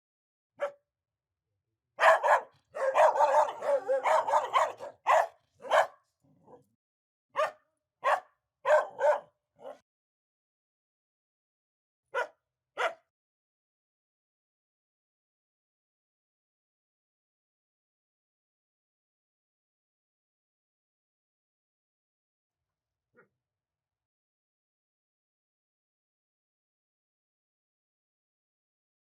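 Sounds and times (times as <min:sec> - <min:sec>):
dog barking angrily: 0:02.0 - 0:06.6, 0:07.4 - 0:09.8, 0:12.2 - 0:13.0.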